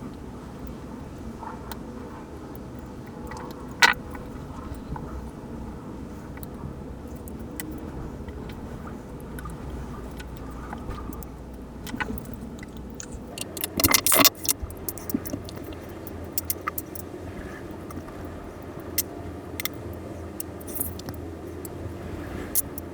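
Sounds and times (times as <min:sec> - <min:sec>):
steady low hum: 0:00.0 - 0:22.9
watch parts clicking and scraping: 0:13.0 - 0:17.0, 0:20.4 - 0:21.2, 0:22.5 - 0:22.9.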